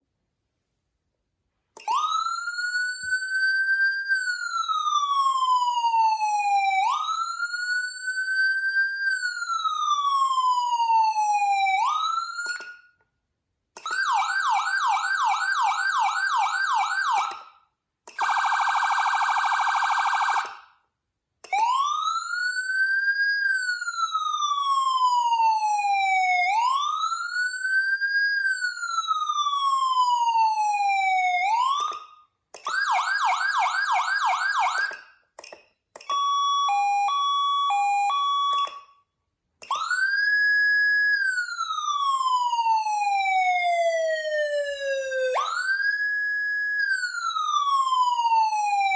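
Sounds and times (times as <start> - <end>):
siren yelp: 1.8 - 12.9, 13.8 - 17.6, 18.2 - 20.6, 21.5 - 35.1, 36.1 - 39.0, 39.6 - 48.9
electronic siren wailing: 36.1 - 38.8, 39.7 - 48.9.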